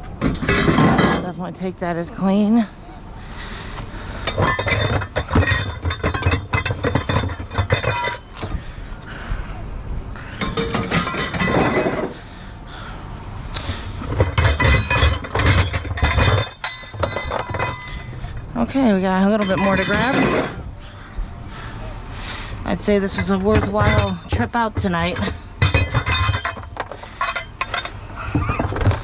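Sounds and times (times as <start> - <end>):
scrap metal clanking: 0.2 - 1.7, 4.1 - 8.6, 10.3 - 12.3, 13.6 - 21.0, 22.7 - 29.0.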